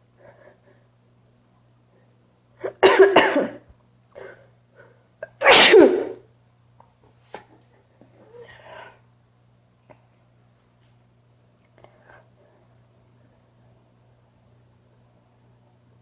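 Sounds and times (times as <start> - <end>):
woman sneezing loudly: 5.4 - 6.2.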